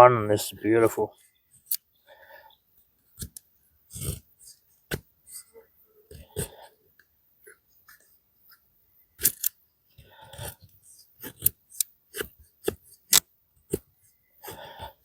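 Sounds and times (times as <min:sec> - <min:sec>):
knife scraping wooden stick: 0:03.2 - 0:06.7.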